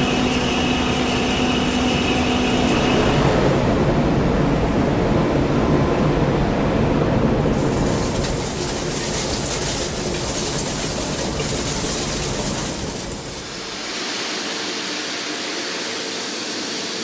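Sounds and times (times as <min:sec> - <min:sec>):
heavy industrial machinery rumble: 0:00.0 - 0:16.5
steady whine: 0:12.2 - 0:17.0.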